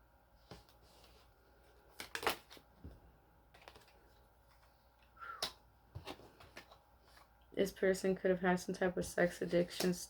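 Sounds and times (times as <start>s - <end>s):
cards tapping and rustling: 0.4s - 7.3s.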